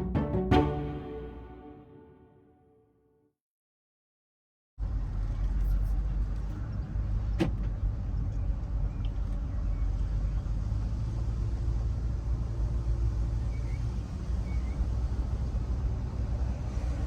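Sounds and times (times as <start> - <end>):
car road and engine rumble: 4.8 - 17.0.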